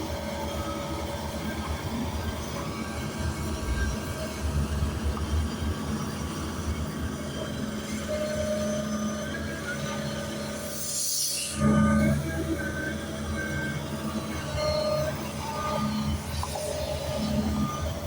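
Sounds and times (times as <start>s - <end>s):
heavy machinery rumbling: 0.0s - 18.0s
machinery whine: 0.0s - 18.0s.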